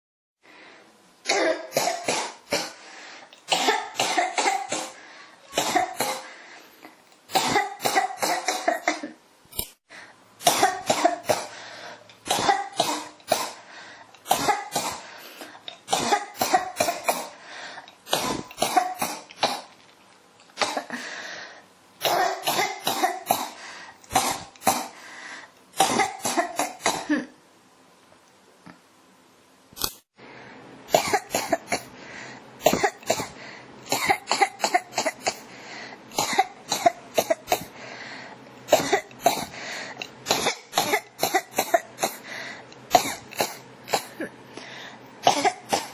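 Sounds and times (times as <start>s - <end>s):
person breathing: 0.4s - 0.9s, 2.7s - 3.4s, 4.9s - 5.5s, 6.1s - 7.0s, 9.9s - 10.3s, 11.4s - 12.2s, 13.6s - 14.2s, 15.0s - 15.7s, 17.4s - 18.0s, 20.9s - 21.7s, 23.5s - 24.1s, 24.9s - 25.6s, 31.8s - 32.6s, 33.2s - 33.8s, 35.4s - 36.1s, 37.6s - 38.5s, 39.4s - 40.1s, 42.1s - 42.8s, 44.5s - 45.2s
person coughing: 1.3s - 2.8s, 3.5s - 6.3s, 7.3s - 9.2s, 10.5s - 11.6s, 12.3s - 13.6s, 14.3s - 17.4s, 18.1s - 19.7s, 20.6s - 21.2s, 22.0s - 25.0s, 25.8s - 27.4s, 30.9s - 31.9s, 32.6s - 35.5s, 36.1s - 37.8s, 38.7s - 42.3s, 42.9s - 44.4s, 45.2s - 45.9s.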